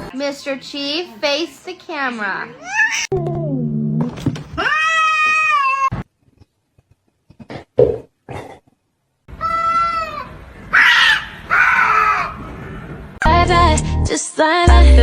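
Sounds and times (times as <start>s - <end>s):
cat meowing: 2.6s - 3.1s, 4.5s - 6.0s.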